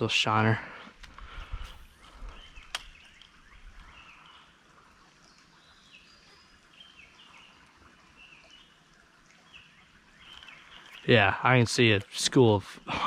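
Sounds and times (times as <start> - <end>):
bird chirping: 9.4 - 11.1.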